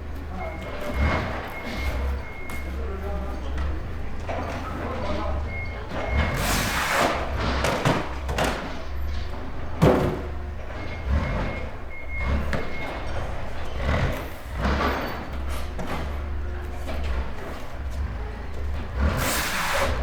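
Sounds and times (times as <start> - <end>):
reversing beeper: 0.0 - 6.7, 8.7 - 18.9
freight clanks and bumps: 0.0 - 20.0
heavy vehicle engine running: 0.0 - 20.0.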